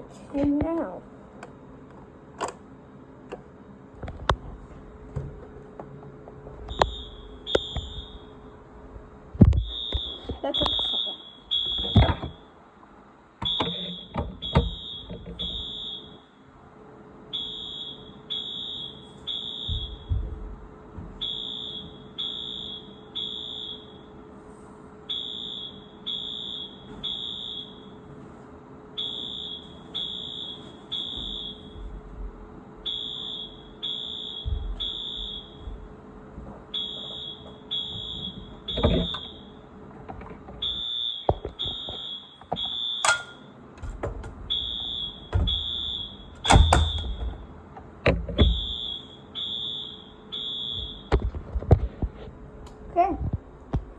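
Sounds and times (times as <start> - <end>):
faint steady hum: 0.0 - 53.9
fire alarm horn beeps: 6.7 - 8.4, 9.6 - 12.6, 13.4 - 16.4, 17.3 - 20.2, 21.2 - 24.2, 25.1 - 28.0, 29.0 - 31.8, 32.8 - 35.7, 36.7 - 39.7, 40.6 - 43.6, 44.2 - 47.6, 48.4 - 51.2.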